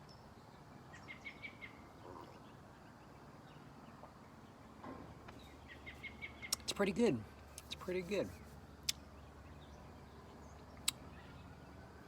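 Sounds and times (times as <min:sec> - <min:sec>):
faint bird chirping: 0:00.0 - 0:12.0
low steady background hum: 0:00.0 - 0:12.0.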